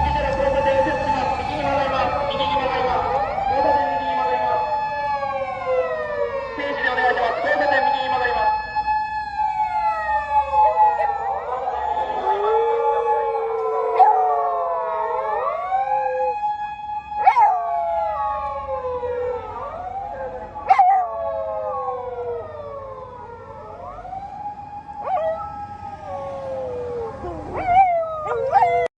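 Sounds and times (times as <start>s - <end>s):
police siren wailing: 0.0s - 28.9s
dogs howling: 9.7s - 16.4s, 17.2s - 22.7s, 24.9s - 28.9s.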